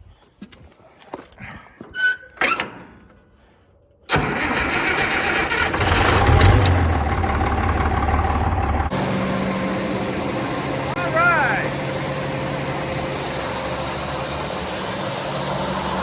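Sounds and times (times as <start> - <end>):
loud steady machine noise: 7.7 - 16.0.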